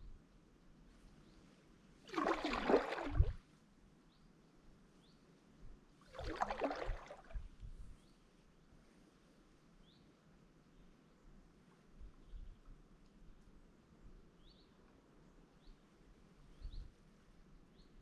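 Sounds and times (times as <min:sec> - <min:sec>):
paddle splashing through water: 0:02.1 - 0:03.4, 0:06.1 - 0:07.5.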